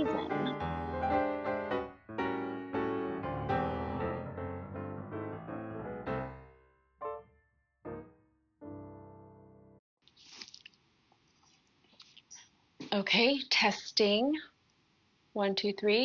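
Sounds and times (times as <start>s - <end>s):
piano music: 0.0s - 9.8s.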